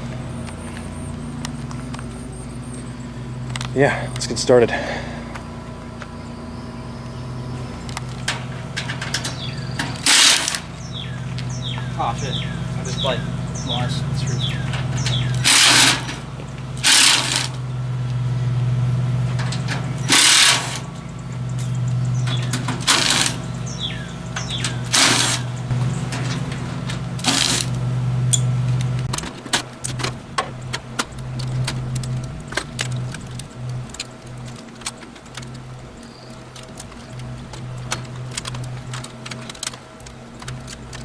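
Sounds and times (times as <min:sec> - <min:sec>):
low machine hum: 0:00.0 - 0:41.0
power screwdriver bursts: 0:10.0 - 0:10.6, 0:15.4 - 0:16.1, 0:16.8 - 0:17.6, 0:20.1 - 0:20.8, 0:24.8 - 0:25.4
clicks and knocks of parts handled: 0:24.4 - 0:41.0.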